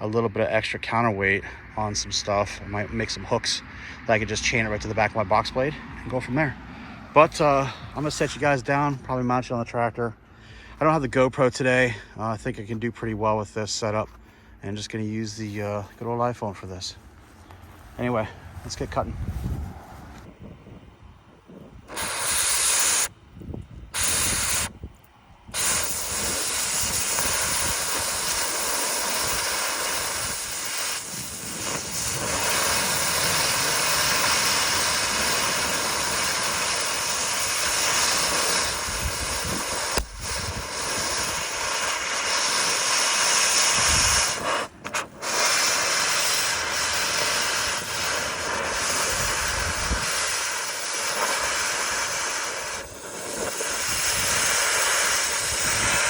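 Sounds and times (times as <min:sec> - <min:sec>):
cutting torch hissing: 0:07.2 - 0:08.9, 0:21.9 - 0:23.2, 0:23.9 - 0:24.9, 0:25.5 - 0:56.0.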